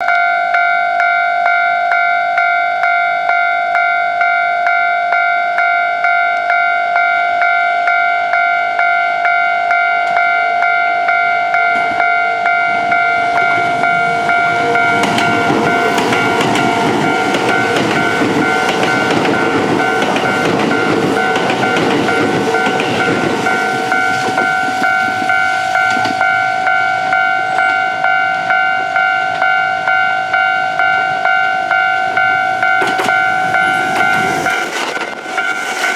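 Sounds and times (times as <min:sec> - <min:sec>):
level-crossing alarm bell: 0:00.0 - 0:35.9
trains rushing past: 0:10.0 - 0:35.9.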